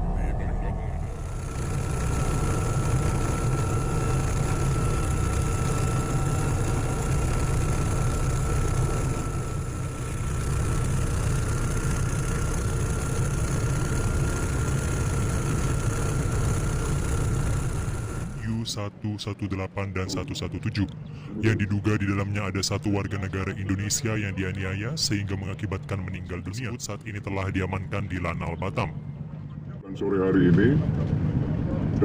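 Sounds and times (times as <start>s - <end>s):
ship engine idling: 0.0s - 18.8s
thin steady whine: 0.0s - 32.0s.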